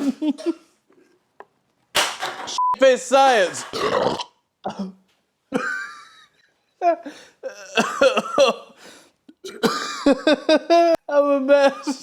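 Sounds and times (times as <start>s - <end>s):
person laughing: 0.0s - 0.7s, 5.6s - 8.7s, 9.6s - 11.0s
person coughing: 7.5s - 8.7s, 9.4s - 10.2s
breathy gasps: 8.8s - 9.2s.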